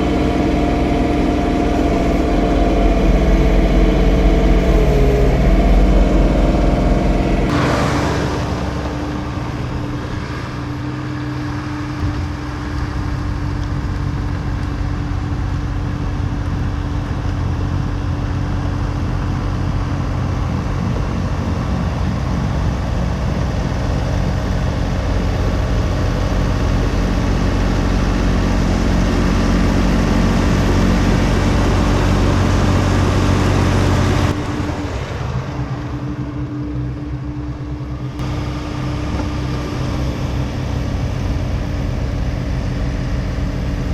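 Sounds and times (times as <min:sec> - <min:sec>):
diesel tractor engine running: 0:00.0 - 0:43.9
snowblower rushing noise: 0:00.0 - 0:43.9.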